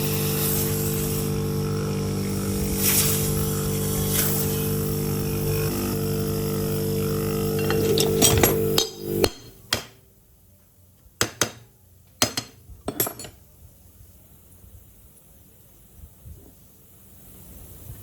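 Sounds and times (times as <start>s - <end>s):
machine humming: 0.0s - 9.8s
tools clinking on metal: 7.6s - 9.8s, 12.2s - 13.4s.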